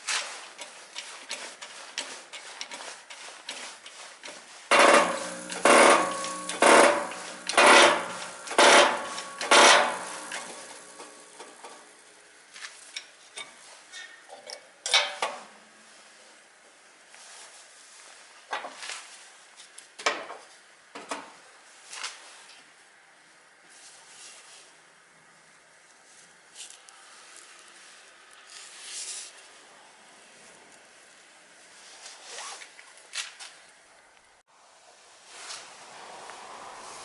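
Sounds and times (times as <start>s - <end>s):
hammer striking metal: 4.7s - 11.7s.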